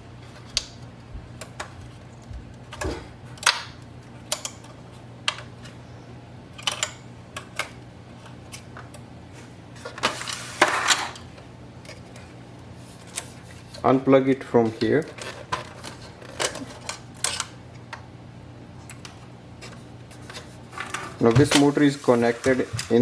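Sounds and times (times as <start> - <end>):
scraping rustle: 9.8 - 11.2.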